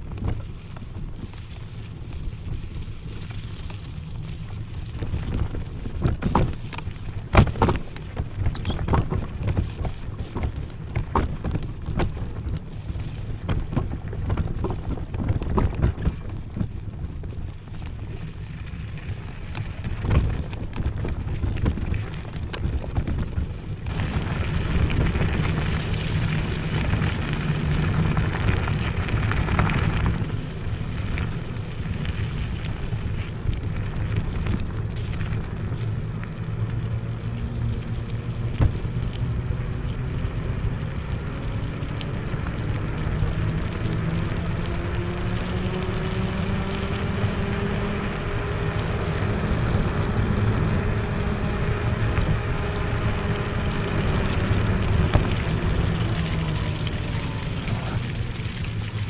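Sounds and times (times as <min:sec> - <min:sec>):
wind buffeting microphone: 0:00.0 - 0:59.0
scooter knocks and rattles: 0:05.0 - 0:17.5, 0:19.5 - 0:25.8.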